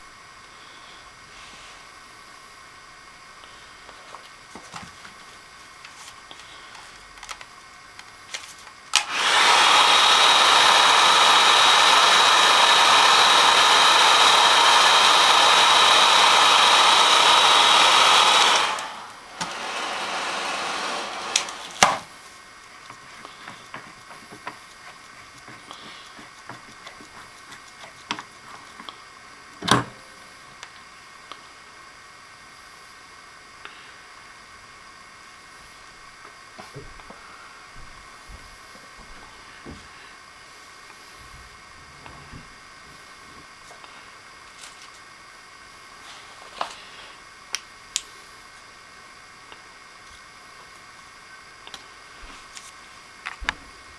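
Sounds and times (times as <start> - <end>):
hot-air blower rushing with whine: 0.0 - 53.9
sharp tool clicks: 8.9 - 10.8.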